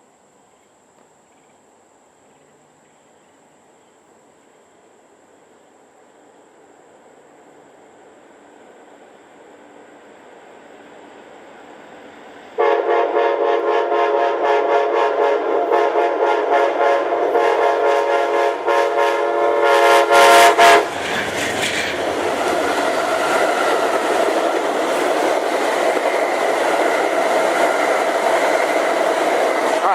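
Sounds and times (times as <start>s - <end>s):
train rumble and wheel clatter: 2.2s - 29.9s
train horn blast: 12.6s - 21.0s.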